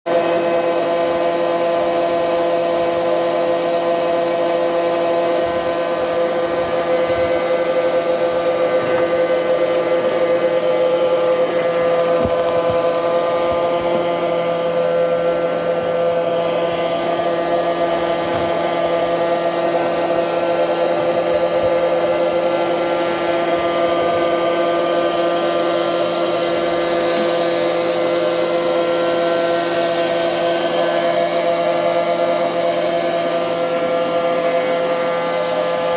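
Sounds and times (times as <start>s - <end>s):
robot vacuum cleaner whine: 0.1s - 35.9s.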